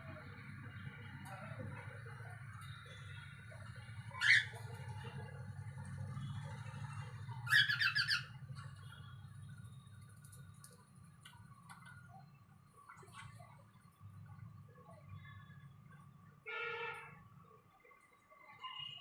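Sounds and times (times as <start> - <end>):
parrot squawking: 4.1 - 4.7, 7.4 - 8.4.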